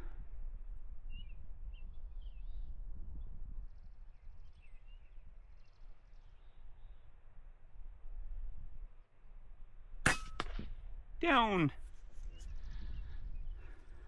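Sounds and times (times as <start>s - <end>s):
small birds chirping: 1.1s - 7.2s, 11.9s - 14.0s.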